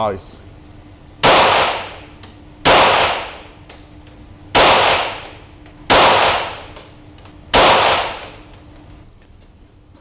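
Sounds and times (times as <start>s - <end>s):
pistol shots with echo: 1.2s - 3.5s, 4.5s - 6.8s, 7.5s - 8.4s.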